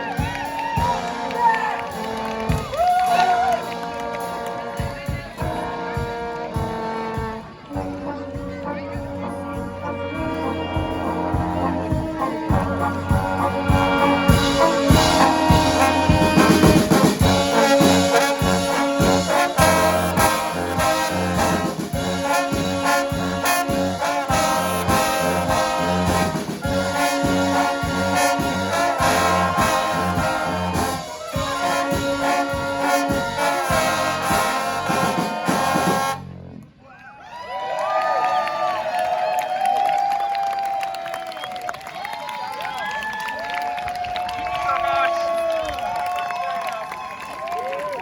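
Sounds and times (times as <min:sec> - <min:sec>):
brass band playing: 0:00.0 - 0:36.7.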